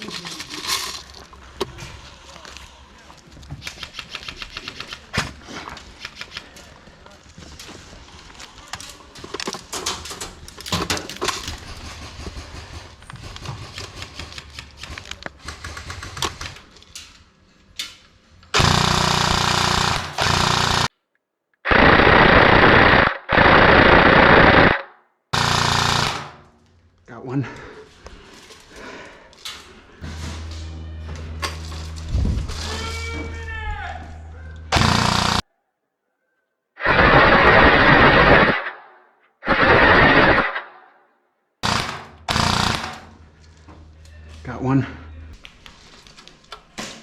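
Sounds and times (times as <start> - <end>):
airsoft gun full auto bursts: 18.6 - 20.9, 21.7 - 24.8, 25.4 - 26.4, 34.8 - 35.4, 39.5 - 40.6, 41.6 - 43.0
distant airsoft fire: 34.7 - 35.4, 41.6 - 43.0.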